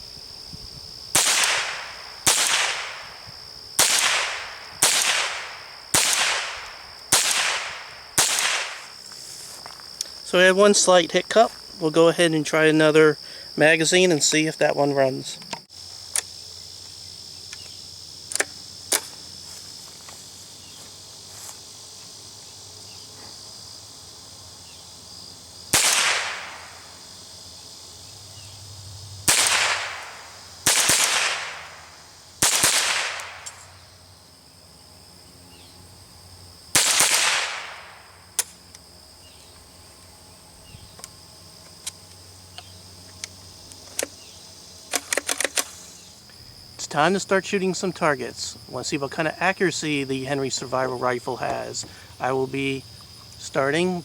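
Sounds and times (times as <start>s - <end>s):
rifle shots with ringing tail: 1.2s - 3.1s, 3.8s - 8.8s, 25.7s - 26.8s, 29.3s - 31.7s, 32.4s - 33.5s, 36.8s - 38.0s.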